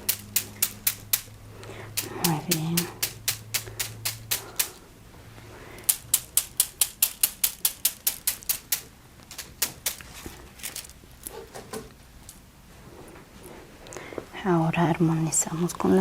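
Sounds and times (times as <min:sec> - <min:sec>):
sharp clicks: 0:00.0 - 0:04.8, 0:05.8 - 0:10.0.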